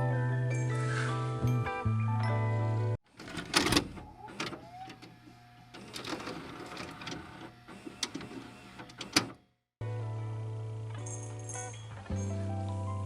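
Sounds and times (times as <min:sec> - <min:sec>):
music: 0:00.0 - 0:03.0, 0:09.8 - 0:13.0.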